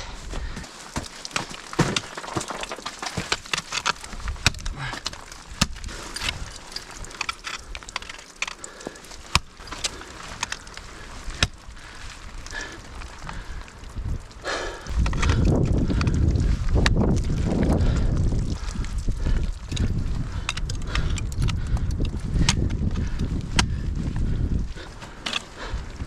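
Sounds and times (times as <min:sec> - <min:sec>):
climbing gear knocking on ice: 0:00.3 - 0:10.7
metal gear jangling: 0:06.0 - 0:08.6.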